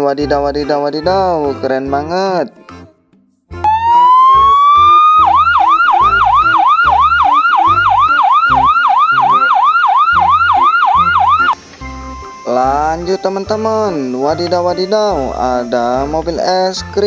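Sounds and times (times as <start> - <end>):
ambulance siren warbling: 3.6 - 17.0.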